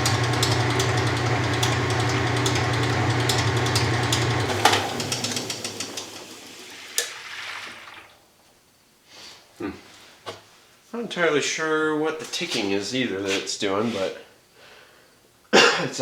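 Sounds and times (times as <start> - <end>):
washing machine knocking: 0.0 - 7.2
washing machine motor drone: 0.0 - 8.1.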